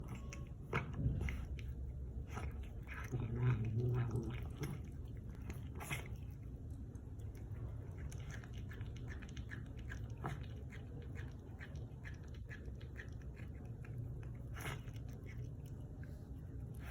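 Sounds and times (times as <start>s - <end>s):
cat crunching food: 0.0s - 16.9s
cat growling: 2.4s - 6.2s.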